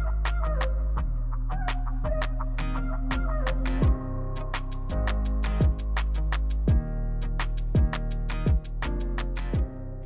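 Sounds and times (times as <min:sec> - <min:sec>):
background music with drum beat: 0:03.8 - 0:04.0, 0:05.0 - 0:06.9, 0:07.6 - 0:09.7.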